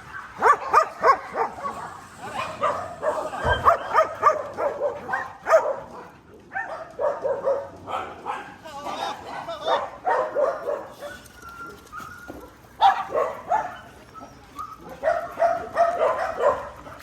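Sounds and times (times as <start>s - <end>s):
dogs barking and yipping: 0.0s - 17.0s
dog whining: 10.6s - 15.7s.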